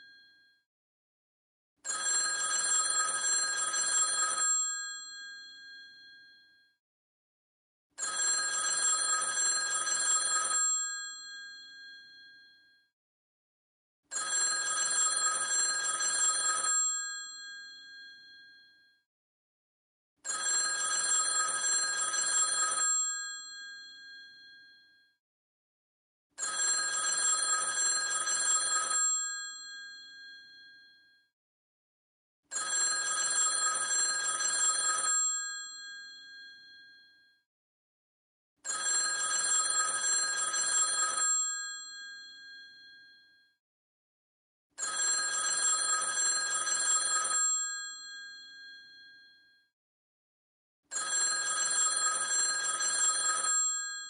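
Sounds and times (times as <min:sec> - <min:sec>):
telephone bell ringing: 0:01.8 - 0:06.6, 0:08.0 - 0:12.7, 0:14.1 - 0:18.8, 0:20.2 - 0:25.0, 0:26.4 - 0:31.1, 0:32.5 - 0:37.2, 0:38.6 - 0:43.3, 0:44.8 - 0:49.5, 0:50.9 - 0:54.0.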